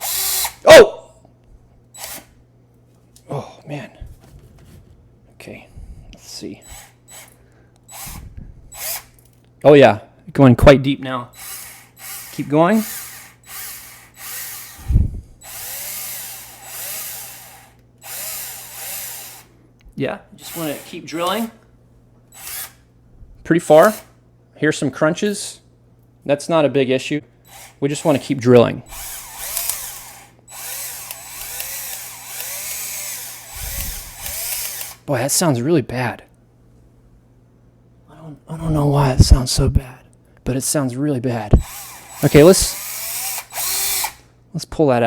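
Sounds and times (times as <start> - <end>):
power drill boring into metal: 0.0 - 0.6, 2.0 - 2.3, 6.6 - 7.3, 7.9 - 9.1, 11.4 - 19.5, 20.4 - 21.5, 22.3 - 22.8, 23.7 - 24.1, 27.5 - 28.3, 28.9 - 35.1, 41.6 - 44.2.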